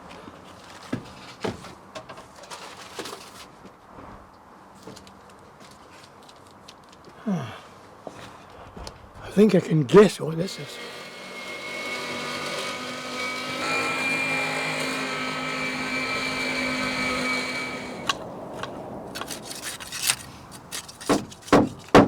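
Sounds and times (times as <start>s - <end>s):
small motor running: 10.6s - 19.3s.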